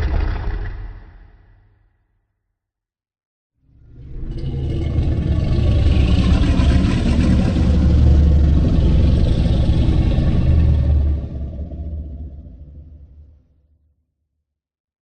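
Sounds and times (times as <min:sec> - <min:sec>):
deep rough monster rumble: 0:03.8 - 0:13.5.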